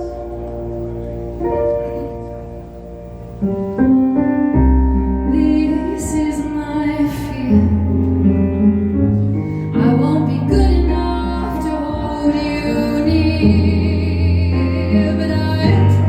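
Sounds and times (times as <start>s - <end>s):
low bass: 0.0s - 16.0s
sustained keyboard chords: 0.0s - 16.0s
woman singing: 5.2s - 8.3s, 9.7s - 16.0s.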